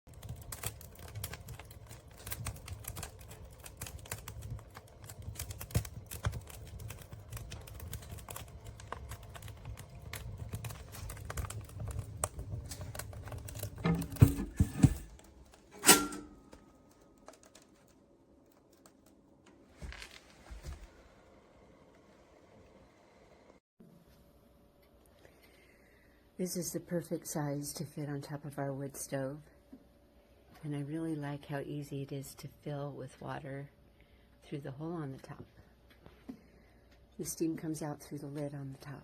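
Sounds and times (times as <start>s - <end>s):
sharp metal clank: 15.7s - 16.5s.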